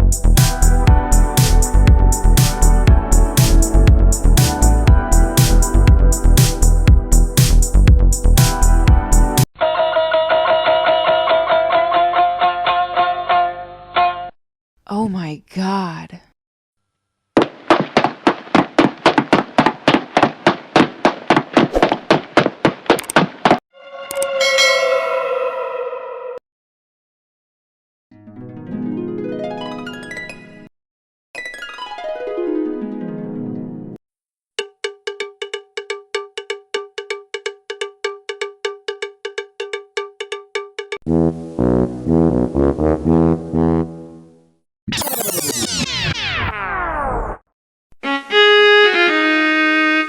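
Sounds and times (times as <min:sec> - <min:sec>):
rapid sharp taps: 0:17.4 - 0:23.6
bell-like percussive strikes: 0:24.4 - 0:25.2.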